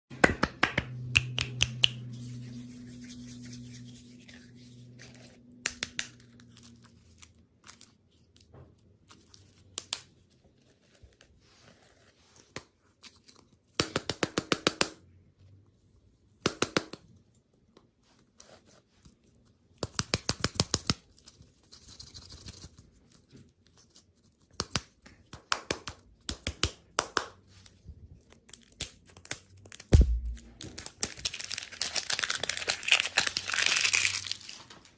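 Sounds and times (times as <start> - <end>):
low hum: 0.8 - 5.6, 30.0 - 30.7
candy packaging crinkling and tearing: 28.3 - 34.9.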